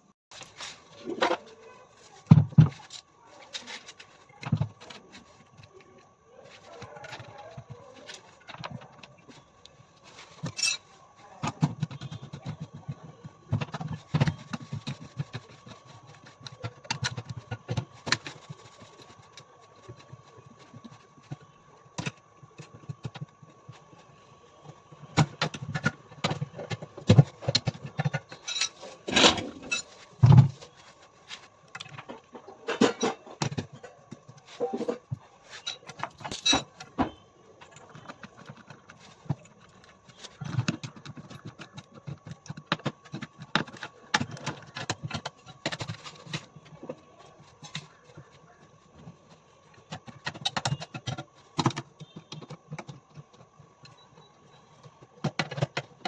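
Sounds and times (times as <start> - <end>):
tools and metal parts clinking: 0.4 - 23.8, 25.2 - 48.2.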